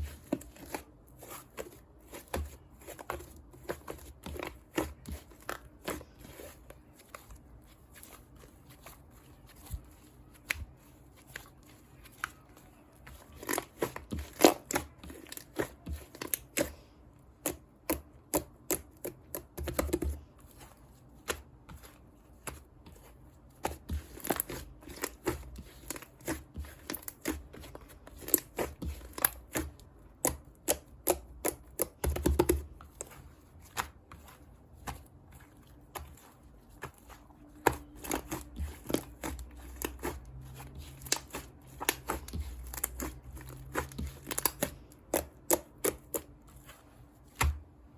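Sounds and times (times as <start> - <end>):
sticky clicks of whipped cream: 0.0 - 47.7.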